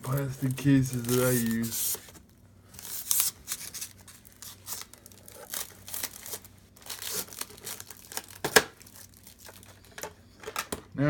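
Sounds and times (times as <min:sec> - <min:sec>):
plastic packaging crinkling: 0:00.0 - 0:10.3.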